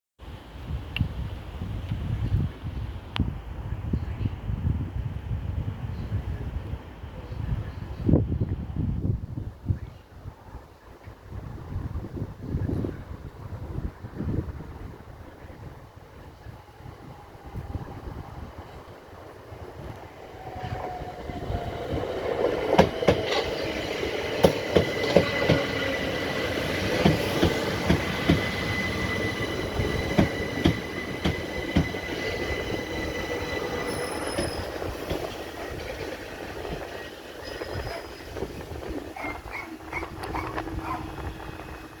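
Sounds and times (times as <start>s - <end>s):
train rumble: 11.3s - 42.0s
train wheels clacking: 20.6s - 42.0s.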